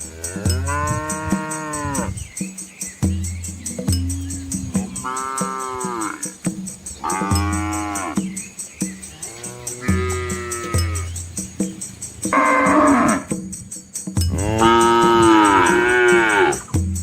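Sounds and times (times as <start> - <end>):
cattle mooing: 0.0 - 2.1, 3.6 - 6.4, 7.0 - 8.2, 9.2 - 11.2, 12.3 - 13.3, 14.3 - 16.7.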